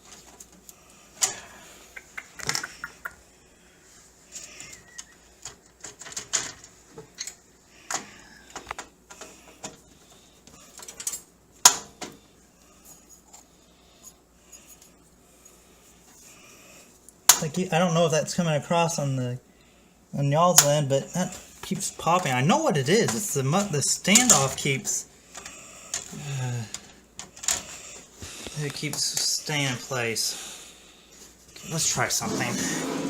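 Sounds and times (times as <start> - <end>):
sharp clicks and pops: 1.9 - 3.2.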